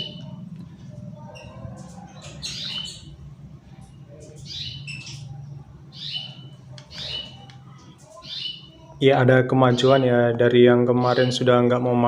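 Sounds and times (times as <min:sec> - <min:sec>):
chicken chirping calls: 0:00.0 - 0:09.0
steady low hum: 0:00.0 - 0:12.0.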